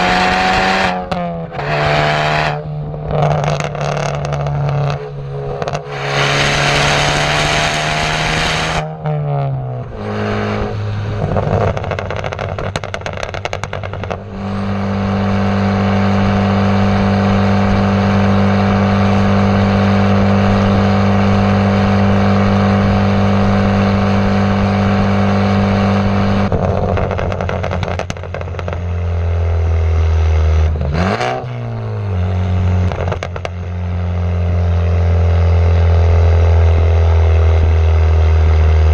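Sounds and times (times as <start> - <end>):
car exhaust drone while driving: 0.0 - 38.9
exhaust crackles: 0.0 - 38.9.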